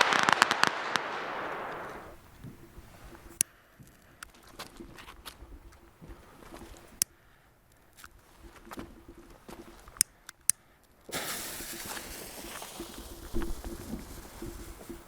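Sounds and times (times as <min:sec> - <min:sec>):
firework hissing: 0:00.0 - 0:02.2, 0:11.1 - 0:15.0.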